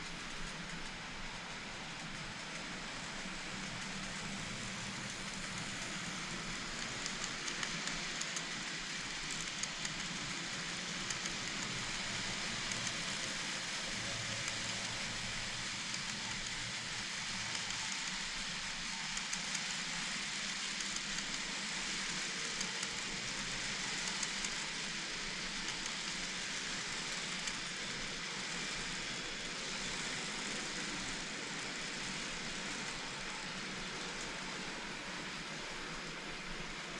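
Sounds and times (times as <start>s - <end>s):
model train rolling on track: 0.0s - 36.9s.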